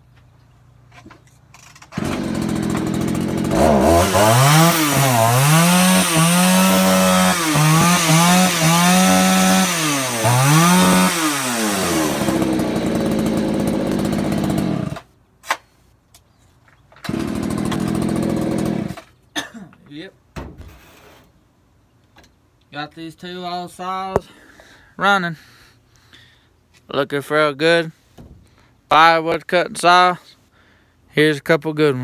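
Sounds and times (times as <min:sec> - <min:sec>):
chainsaw revving and idling: 0:02.0 - 0:15.1, 0:17.1 - 0:19.0.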